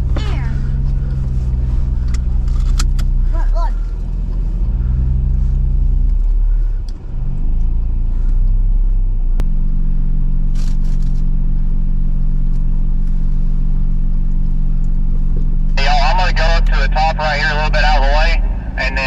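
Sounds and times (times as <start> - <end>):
engine working at low speed: 0.0 - 19.0.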